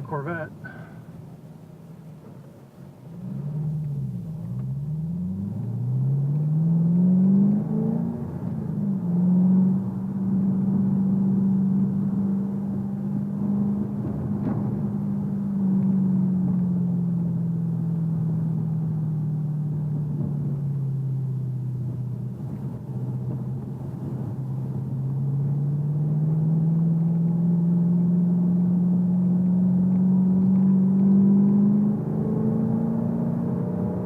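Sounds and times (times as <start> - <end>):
car engine exhaust revving: 2.6 - 34.0.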